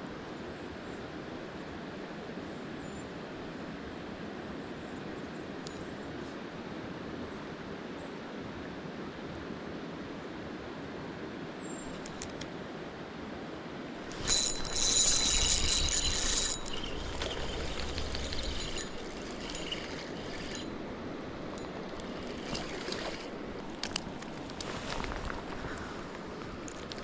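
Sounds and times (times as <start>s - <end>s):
river water running: 13.8s - 27.0s.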